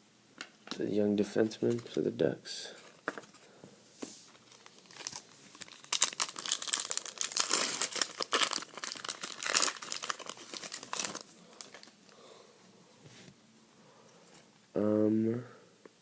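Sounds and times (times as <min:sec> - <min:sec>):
foil wrapper tearing and crinkling: 0:04.5 - 0:11.9.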